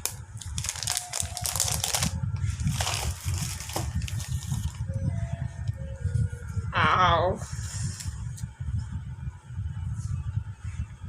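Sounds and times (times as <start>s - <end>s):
plastic packaging crinkling: 0.0s - 4.9s.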